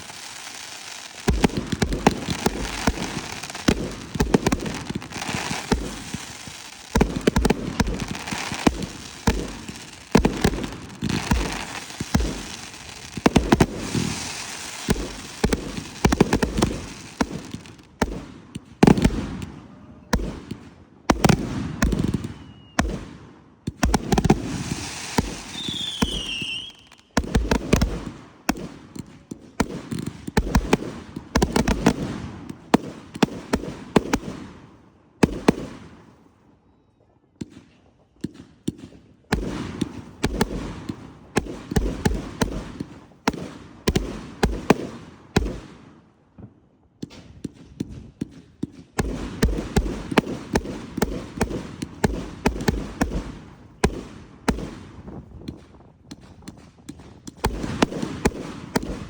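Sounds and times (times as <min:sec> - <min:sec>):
fireworks crackling: 0:00.0 - 0:19.5, 0:23.8 - 0:34.4, 0:39.3 - 0:45.8, 0:47.0 - 0:59.0
fireworks booming and banging: 0:00.0 - 0:34.6, 0:37.4 - 0:45.8, 0:46.4 - 0:59.0
falling firework whistle: 0:22.1 - 0:22.9, 0:24.8 - 0:27.2.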